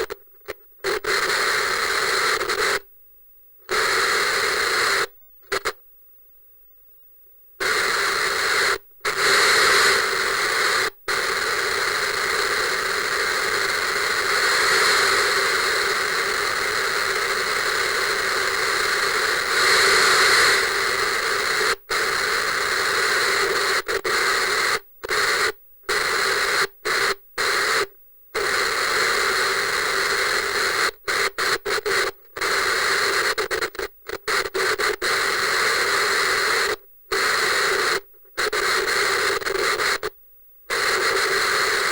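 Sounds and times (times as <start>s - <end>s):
tv static hiss: 0.0s - 2.9s, 3.6s - 5.8s, 7.6s - 41.9s.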